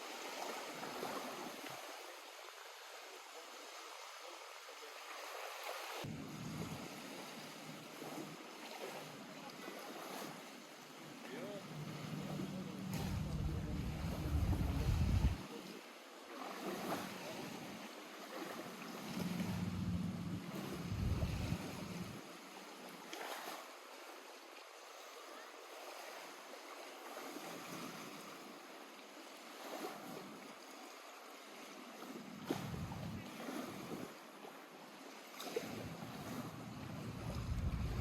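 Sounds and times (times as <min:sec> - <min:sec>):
water lapping at shore: 0:00.0 - 0:38.0
wind rumble on microphone: 0:12.8 - 0:15.4, 0:19.1 - 0:22.2, 0:32.4 - 0:34.1, 0:35.6 - 0:38.0.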